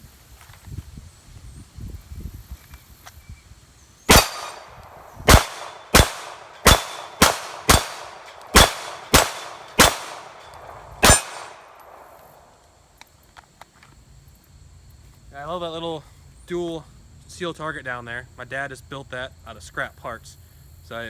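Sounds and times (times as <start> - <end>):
bullets ringing on steel target: 4.1 - 12.0
pistol shots: 4.1 - 12.5.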